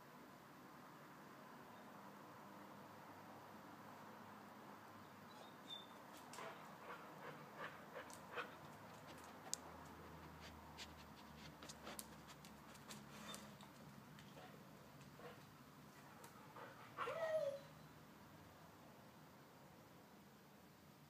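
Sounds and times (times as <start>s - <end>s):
dog's faint clicks: 8.0s - 14.4s.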